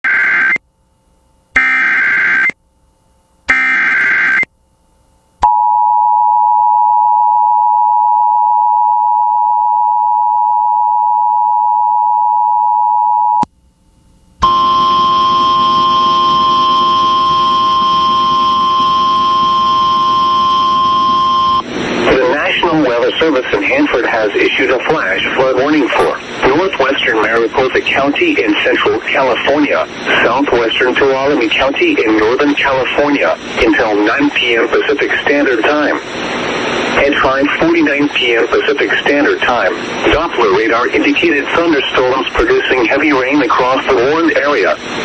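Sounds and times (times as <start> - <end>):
harsh steady tone: 0.0 - 4.6, 25.7 - 27.2
two-tone attention signal: 25.9 - 26.2
data bursts: 25.9 - 26.4.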